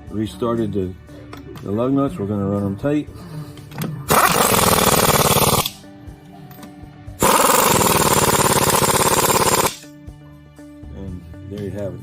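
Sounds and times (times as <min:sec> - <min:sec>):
air impact wrench hammering: 0:04.1 - 0:05.8, 0:07.2 - 0:09.8.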